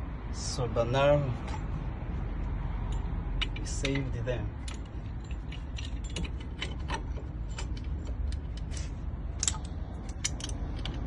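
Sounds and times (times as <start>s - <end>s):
metallic tool clicks and ratcheting: 2.9s - 11.0s.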